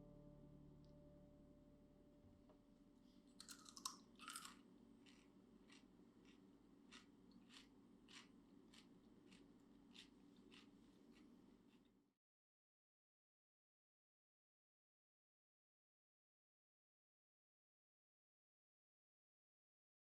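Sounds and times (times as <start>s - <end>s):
pickle crunching bites: 3.4s - 11.2s
chewing crunches: 3.4s - 11.8s.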